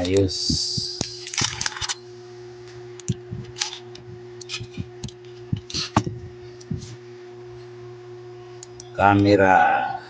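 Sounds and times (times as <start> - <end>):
low hum: 0.0 - 10.0
small tools clicking and tapping: 3.0 - 6.8.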